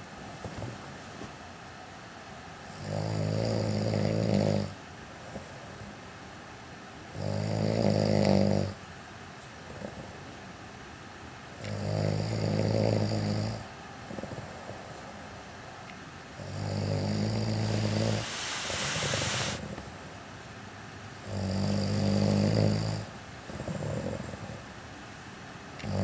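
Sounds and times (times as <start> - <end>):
man snoring: 16.5 - 19.6.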